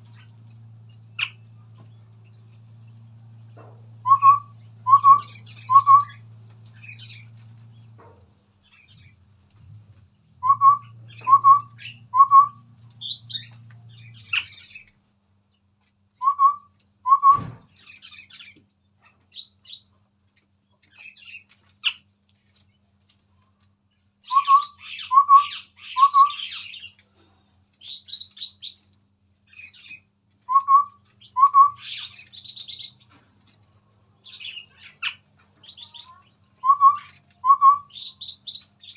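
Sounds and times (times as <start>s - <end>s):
birds whistling: 0.0s - 15.5s, 16.2s - 20.0s, 23.2s - 38.9s
birds chirping and chattering: 0.0s - 38.9s
thump: 17.2s - 17.8s.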